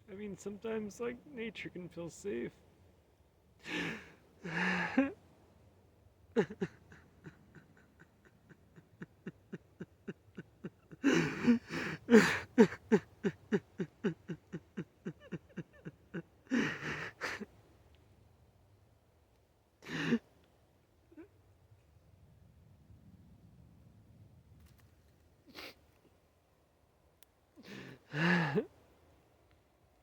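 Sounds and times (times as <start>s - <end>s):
person sobbing: 3.6s - 5.2s, 6.4s - 17.5s, 19.8s - 20.2s, 27.6s - 28.7s.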